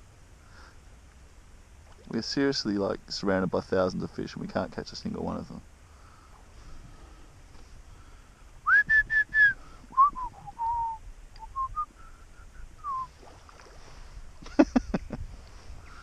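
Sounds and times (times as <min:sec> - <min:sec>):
whistled notes: 0:08.7 - 0:13.1.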